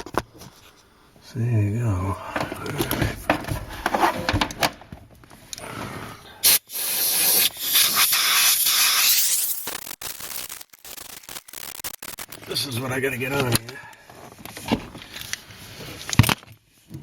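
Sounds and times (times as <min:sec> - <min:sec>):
compressed air blow gun hissing: 0:06.4 - 0:09.8.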